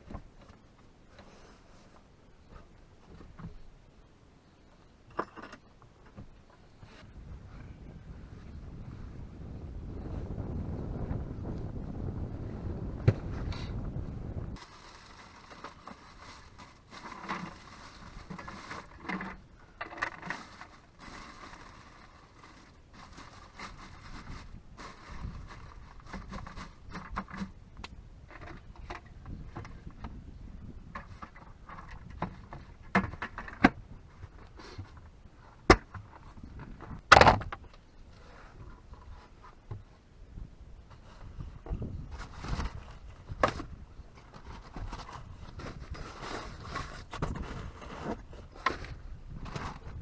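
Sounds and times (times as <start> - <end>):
wind buffeting microphone: 6.8 - 14.6, 23.6 - 34.4, 40.2 - 50.0
objects being handled: 14.6 - 27.6.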